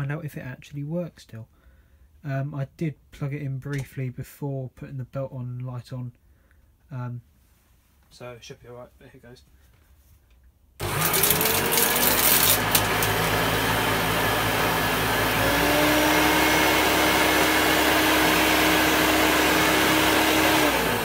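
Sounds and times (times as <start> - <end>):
upright vacuum cleaner running: 10.8 - 21.0.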